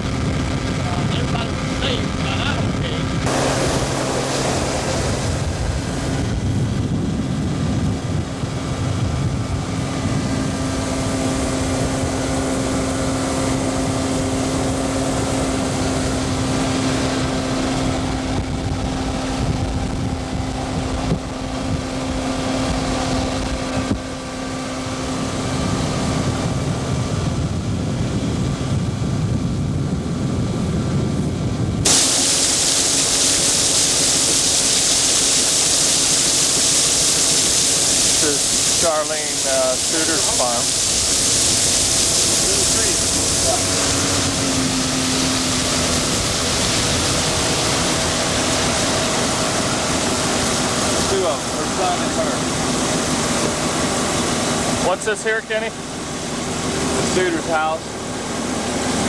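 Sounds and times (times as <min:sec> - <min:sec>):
motorboat engine running: 0:00.0 - 0:59.0
wind blowing on microphone: 0:00.0 - 0:59.0.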